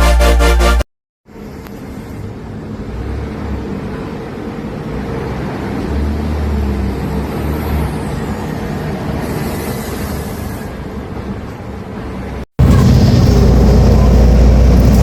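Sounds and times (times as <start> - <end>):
bus diesel engine rumbling: 0.0 - 15.0
hiss of compressed air: 9.2 - 10.8.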